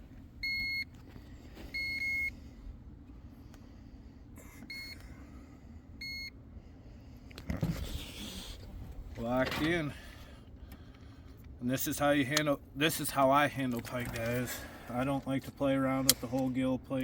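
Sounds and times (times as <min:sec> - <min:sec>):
digital scale beeping: 0:01.8 - 0:02.3.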